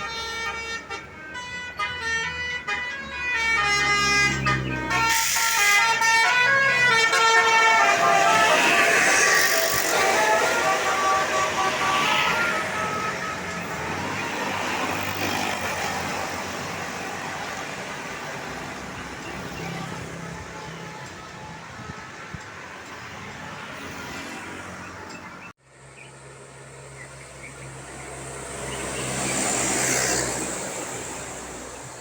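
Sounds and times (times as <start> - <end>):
multi-note bus horn: 0.0 - 23.2
bus engine and tyre noise: 0.0 - 32.0.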